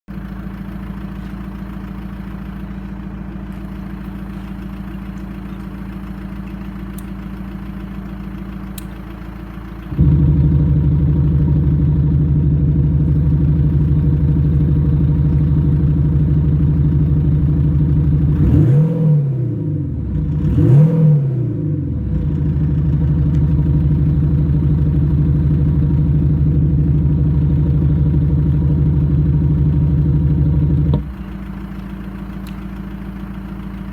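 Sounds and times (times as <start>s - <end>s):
synthesised engine drone: 1.8s - 31.7s
engine rev blips: 9.9s - 15.3s, 18.1s - 25.8s.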